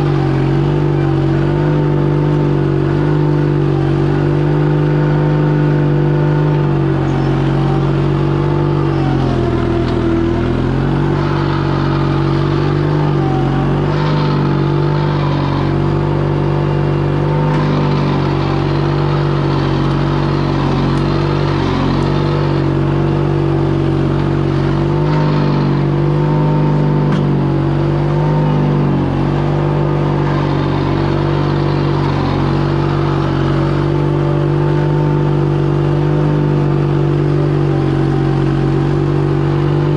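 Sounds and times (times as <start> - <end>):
drive belt squalling: 0.0 - 39.9
skid steer engine running: 0.0 - 39.9.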